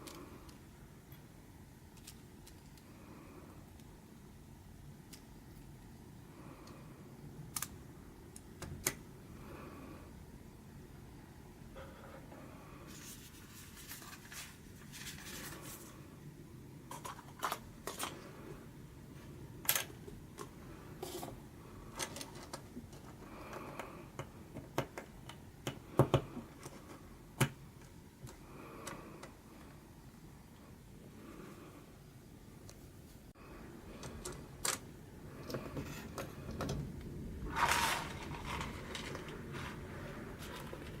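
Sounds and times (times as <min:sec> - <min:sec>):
plastic pieces clicking and rattling: 0:01.9 - 0:02.8, 0:16.9 - 0:18.2, 0:21.9 - 0:29.3, 0:37.5 - 0:39.8.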